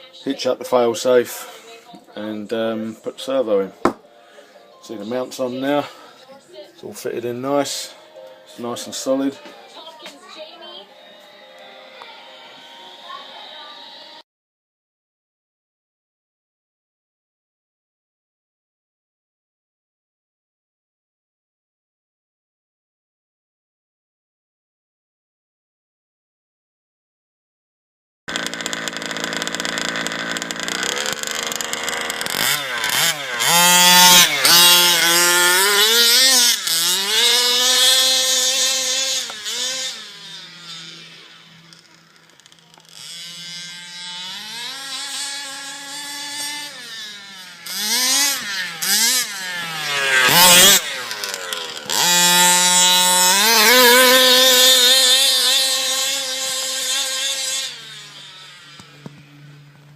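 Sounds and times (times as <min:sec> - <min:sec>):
small two-stroke engine revving: 0:11.1 - 0:14.2, 0:28.3 - 0:59.9.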